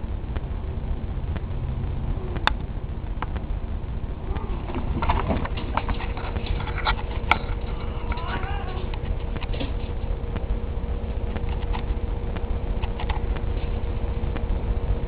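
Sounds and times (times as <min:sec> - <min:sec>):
steady low rumble: 0:00.0 - 0:15.0
dog and cat scuffling: 0:04.3 - 0:10.2.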